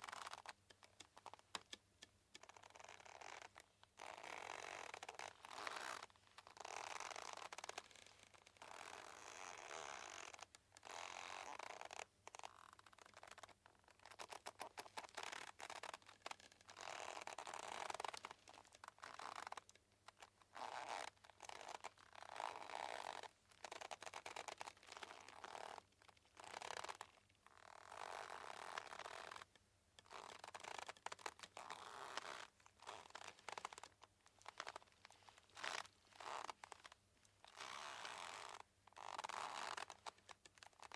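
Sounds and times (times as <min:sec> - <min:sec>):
mooring rope creaking: 0:30.0 - 0:40.9.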